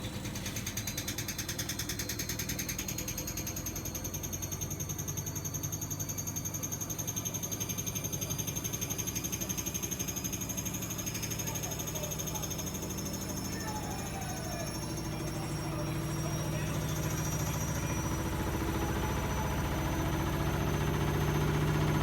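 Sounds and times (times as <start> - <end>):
washing machine drum pulsing hum: 0.0 - 22.0.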